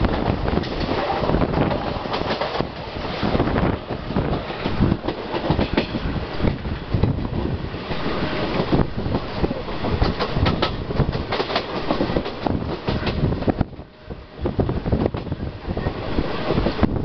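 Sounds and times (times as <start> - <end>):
train wheels clattering: 0.0 - 13.6
rolling and wind noise: 0.0 - 17.0.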